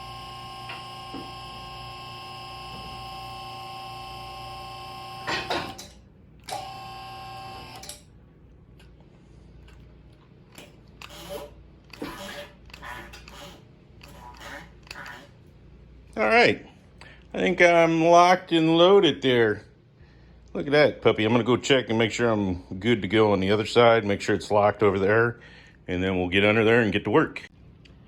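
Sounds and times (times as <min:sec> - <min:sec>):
pump motor whining: 0:00.0 - 0:08.0
loud clunk: 0:05.2 - 0:06.0
metal clanks and knocks: 0:05.3 - 0:06.0.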